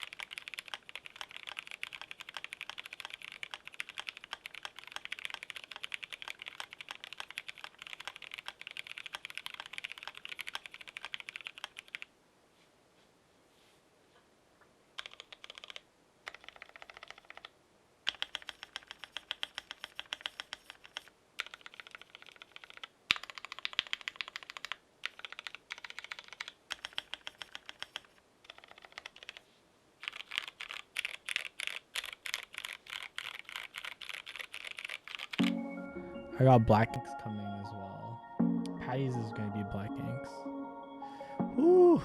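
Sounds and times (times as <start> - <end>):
mechanical keyboard typing: 0.0 - 12.1, 15.0 - 17.5, 18.1 - 29.4, 30.0 - 35.6.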